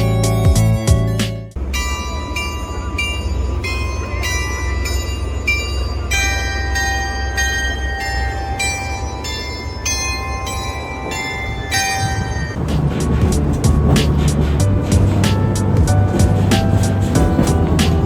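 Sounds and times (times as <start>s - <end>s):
bell-like chiming melody: 0.0s - 12.6s
train rumbling: 0.0s - 18.0s.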